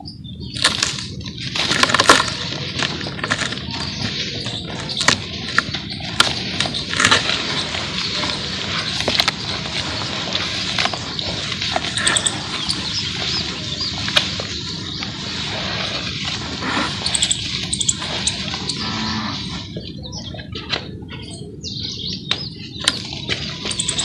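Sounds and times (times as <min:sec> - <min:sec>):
gritty crackle of paste: 0:00.5 - 0:19.6.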